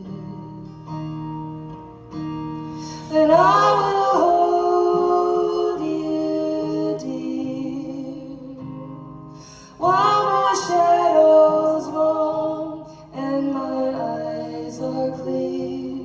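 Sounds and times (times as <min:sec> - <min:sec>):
acoustic guitar: 0:00.0 - 0:16.0
women singing in harmony: 0:03.0 - 0:08.7, 0:09.8 - 0:16.0.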